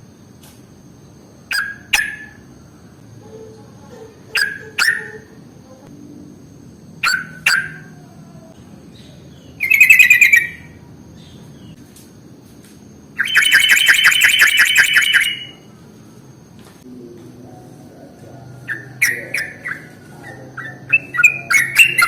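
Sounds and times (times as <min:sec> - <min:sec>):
bulbul calling and chattering: 0:01.5 - 0:02.4, 0:04.3 - 0:05.4, 0:07.0 - 0:08.0, 0:08.9 - 0:11.8, 0:13.2 - 0:15.6, 0:18.6 - 0:22.0.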